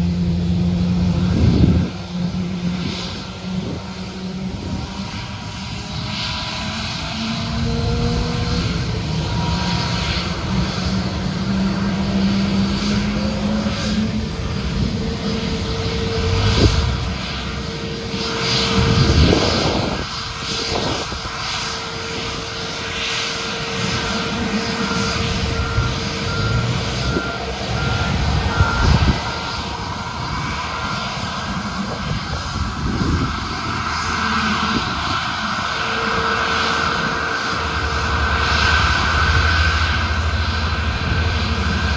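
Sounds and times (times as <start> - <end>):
jet engines rumbling: 0.0 - 41.9
short beeps: 24.8 - 29.7.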